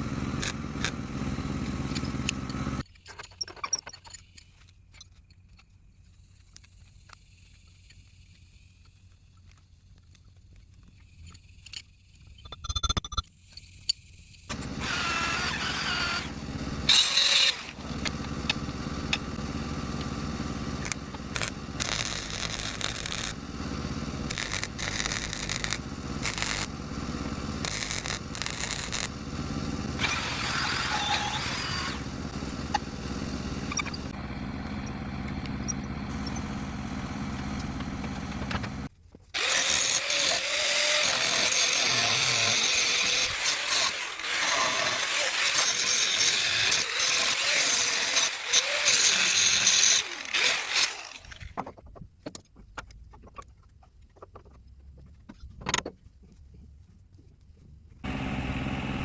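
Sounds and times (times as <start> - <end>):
power tool scraping: 0.0 - 2.8, 14.5 - 51.6.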